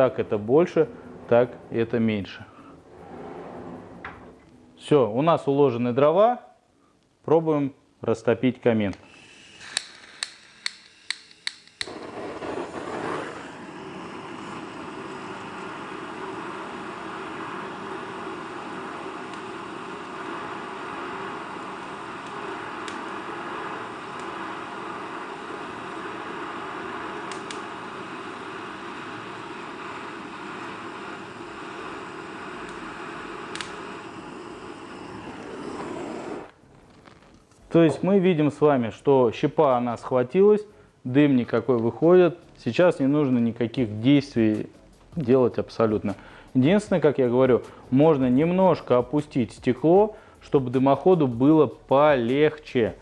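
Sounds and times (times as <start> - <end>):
flame rushing hiss: 0.0 - 4.9, 9.0 - 53.0
faint fire crackles: 0.0 - 6.0, 8.6 - 53.0
lighter ignition clicking: 9.0 - 18.4, 19.1 - 24.6, 27.0 - 27.8, 30.4 - 37.7.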